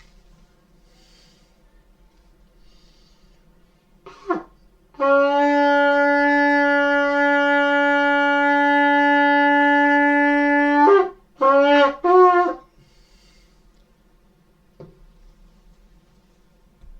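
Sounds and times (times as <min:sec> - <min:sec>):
shofar blasts: 0:04.1 - 0:12.7.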